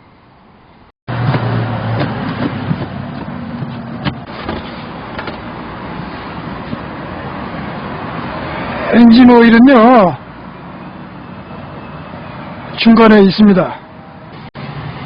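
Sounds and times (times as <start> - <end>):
engine running steadily: 1.1 - 7.0.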